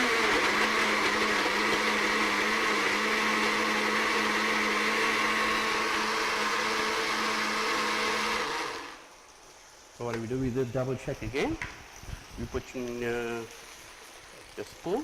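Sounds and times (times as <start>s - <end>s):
blender motor running: 0.0s - 9.0s.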